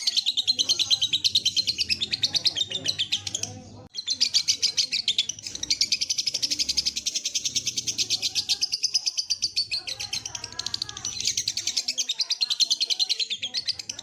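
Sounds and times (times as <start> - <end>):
bird chattering trill: 0.0 - 14.0.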